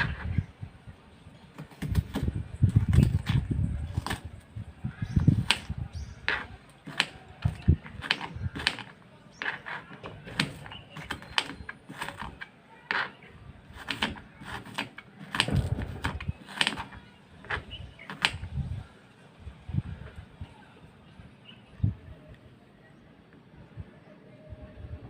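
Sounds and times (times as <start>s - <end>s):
knife chopping on cutting board: 13.8s - 16.9s.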